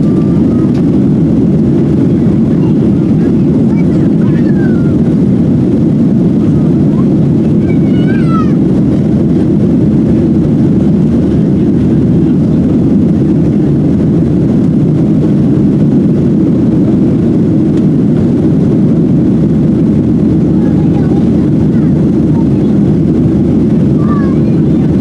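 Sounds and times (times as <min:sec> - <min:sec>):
aircraft cabin drone: 0:00.0 - 0:25.0
faint high voice: 0:06.9 - 0:08.6, 0:24.0 - 0:25.0.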